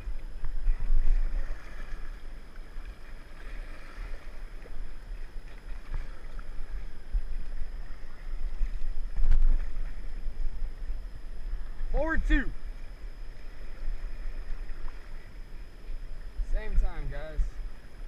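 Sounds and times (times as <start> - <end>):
river water and paddles: 0.0 - 18.0
wind rumbling on microphone: 0.0 - 18.0.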